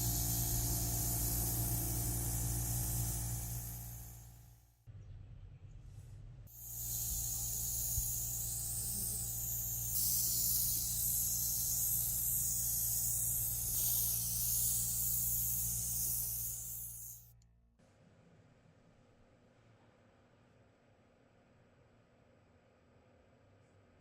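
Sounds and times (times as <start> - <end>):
air spray gun hissing: 0.0 - 4.5, 6.5 - 17.3
machine hum: 0.0 - 4.5, 6.5 - 17.2.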